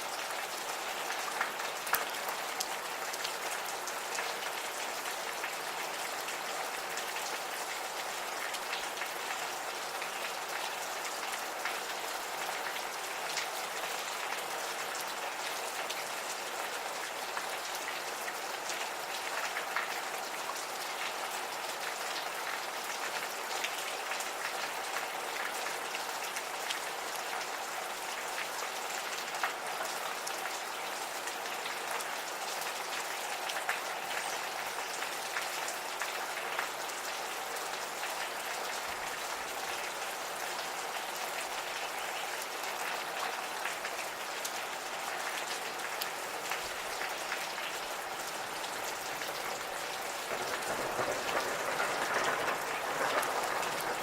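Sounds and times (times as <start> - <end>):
gentle rain falling: 0.0 - 54.0
raindrops ticking: 45.4 - 54.0.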